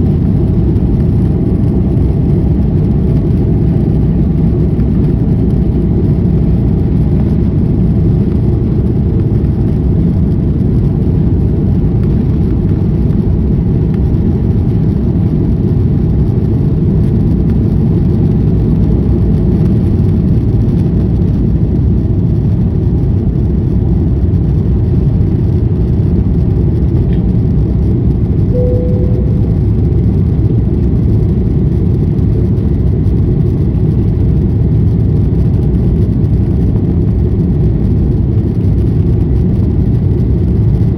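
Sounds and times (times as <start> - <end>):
airliner cabin engine rumble: 0.0 - 40.9
short single tone: 28.5 - 30.2.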